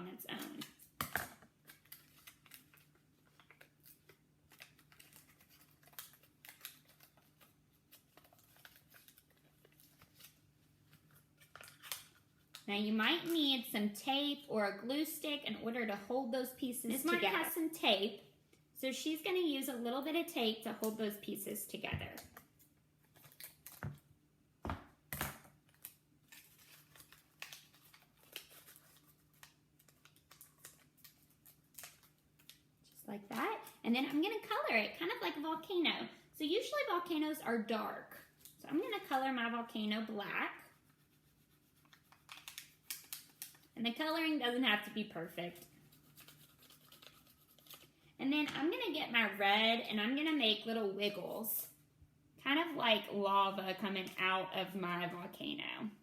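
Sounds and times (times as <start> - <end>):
paper crinkling: 1.5 - 12.6, 22.4 - 24.0, 25.6 - 33.8, 40.6 - 43.8, 45.2 - 48.1
scissors snipping paper: 41.8 - 43.6, 45.5 - 47.9.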